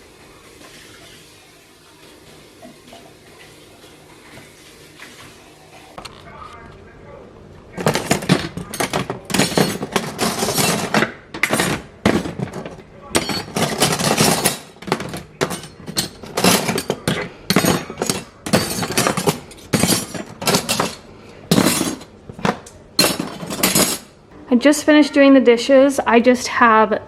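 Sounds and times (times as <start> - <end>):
dishes and cutlery clinking: 7.8 - 24.2.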